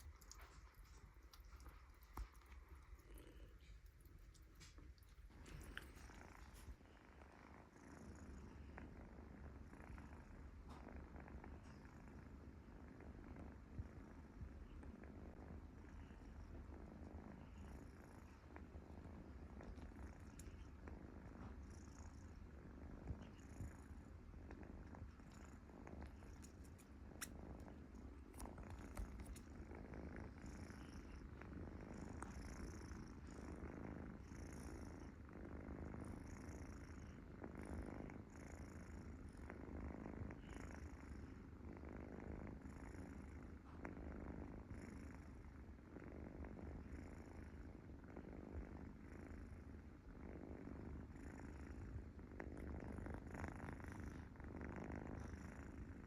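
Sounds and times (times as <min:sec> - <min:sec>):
faint clicks: 0:00.0 - 0:06.8, 0:24.5 - 0:29.6
cat purring: 0:00.0 - 0:56.0.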